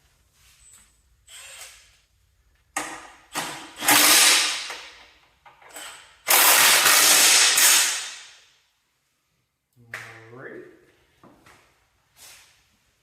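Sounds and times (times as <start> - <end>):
impact wrench bursts: 3.2 - 5.0, 5.7 - 8.4.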